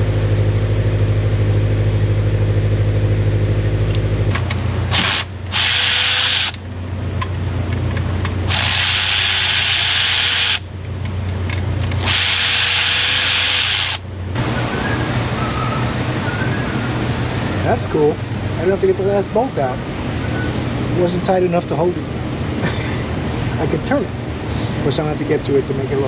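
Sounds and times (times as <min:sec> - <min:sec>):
steady low hum: 0:00.0 - 0:26.0
power tool running: 0:04.9 - 0:06.6, 0:08.4 - 0:10.7, 0:11.8 - 0:14.0.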